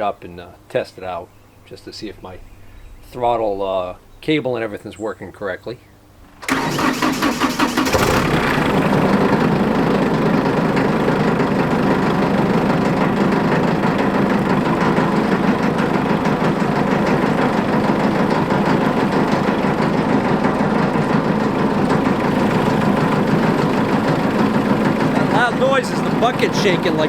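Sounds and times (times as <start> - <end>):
diesel engine starter cranking: 6.2 - 27.0
diesel engine idling: 6.4 - 27.0.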